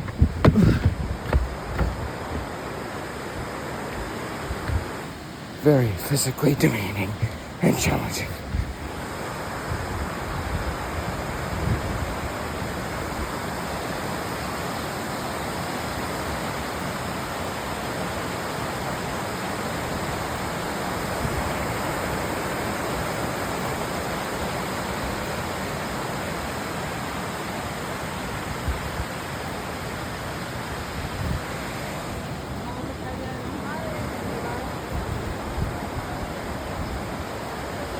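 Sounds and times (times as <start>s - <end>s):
faint low thumps: 0.0s - 2.6s
waterfall roaring: 0.0s - 35.2s.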